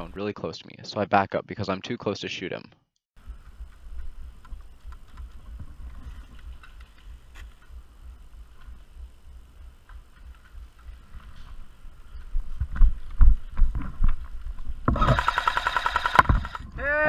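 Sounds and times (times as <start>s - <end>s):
faint clicks and rustles: 3.2s - 15.0s
wind rumbling on microphone: 3.2s - 15.1s.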